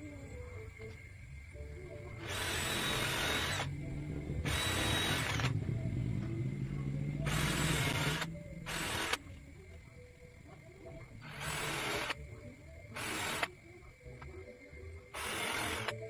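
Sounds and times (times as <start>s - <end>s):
power tool cutting wood: 2.2s - 3.7s, 4.4s - 5.5s, 7.2s - 9.2s, 15.2s - 16.0s.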